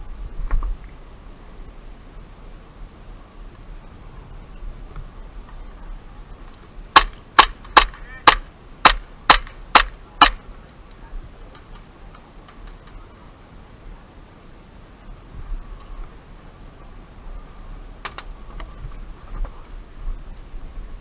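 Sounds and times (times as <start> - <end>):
airsoft gun shots: 7.0 - 10.4.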